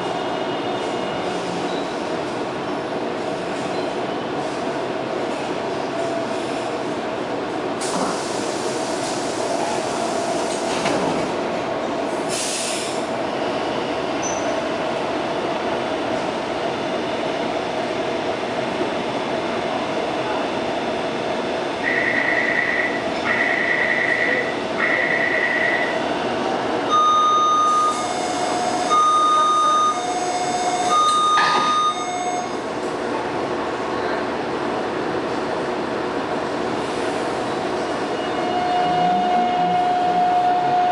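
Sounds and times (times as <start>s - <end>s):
train car hum: 0.0s - 40.9s
two-tone door-closing chime: 31.0s - 32.5s.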